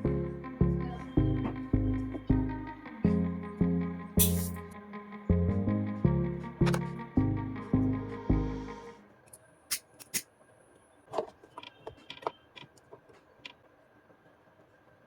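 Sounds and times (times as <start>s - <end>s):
music: 0.0s - 9.0s.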